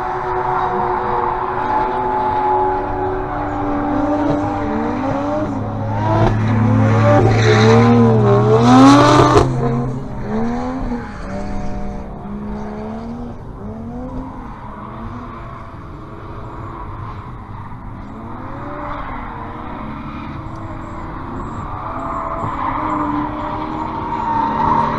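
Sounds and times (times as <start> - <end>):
car engine running hard: 0.0 - 24.9
tyres squealing: 13.8 - 24.9.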